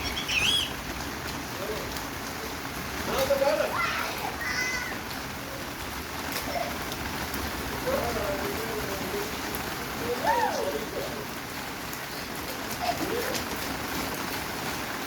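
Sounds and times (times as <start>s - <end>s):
voice calls: 0.0s - 0.9s
heavy rain pouring: 0.0s - 15.0s.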